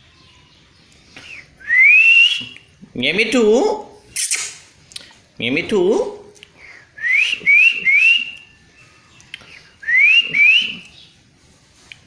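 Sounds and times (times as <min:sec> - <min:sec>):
parrot whistling: 0:07.0 - 0:08.6, 0:09.8 - 0:10.9.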